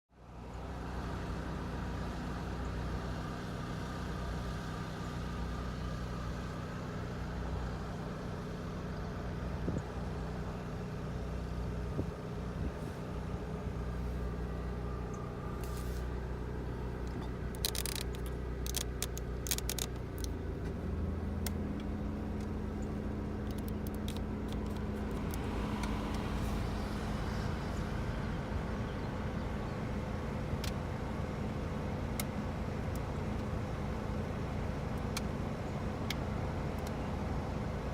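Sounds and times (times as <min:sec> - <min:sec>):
sharp clicks: 0:17.0 - 0:20.4, 0:23.4 - 0:26.2.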